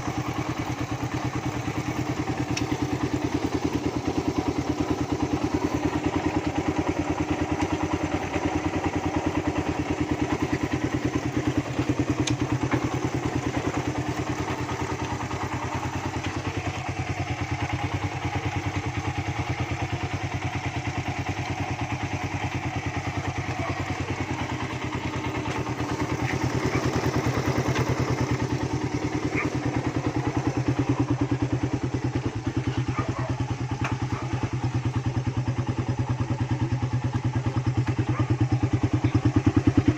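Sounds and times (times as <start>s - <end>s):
engine exhaust pulses: 20.4s - 39.9s.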